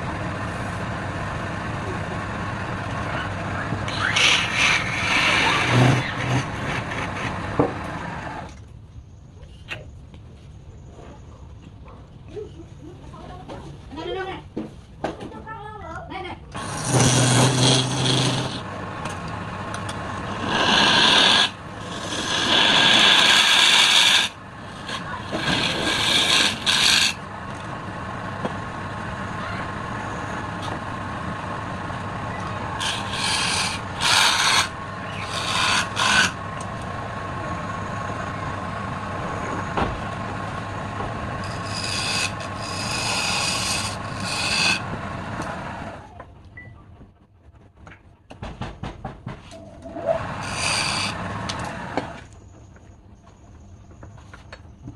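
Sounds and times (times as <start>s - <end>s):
tool scraping spinning wood: 0.0s - 8.5s, 16.6s - 46.0s, 49.5s - 52.3s
wood lathe humming: 0.0s - 8.5s, 16.6s - 39.3s, 40.2s - 46.0s, 49.9s - 52.2s.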